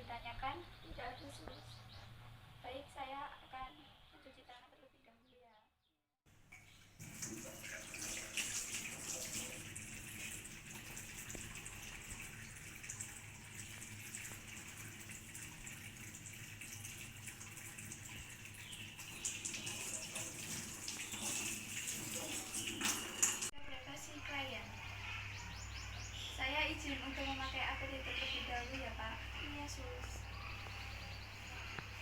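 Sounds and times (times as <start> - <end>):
hands washing under water: 7.0 - 23.5
tap water running into sink: 7.0 - 23.5.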